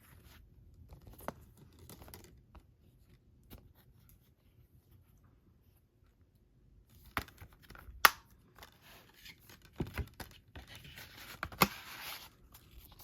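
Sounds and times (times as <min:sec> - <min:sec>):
plastic case clicks and snaps: 0:08.0 - 0:08.3.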